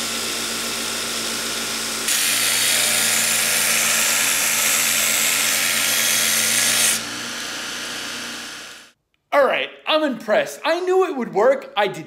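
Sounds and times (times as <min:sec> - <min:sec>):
grinder motor humming: 0:00.0 - 0:09.0
belt grinder grinding steel: 0:01.1 - 0:09.0.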